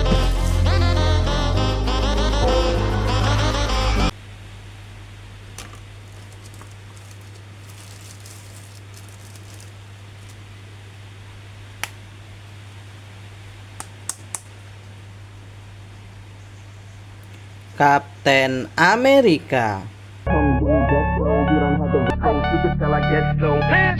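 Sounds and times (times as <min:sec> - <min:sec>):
plastic package rustling: 0:05.3 - 0:15.6
sharp plastic clicks: 0:13.8 - 0:14.6.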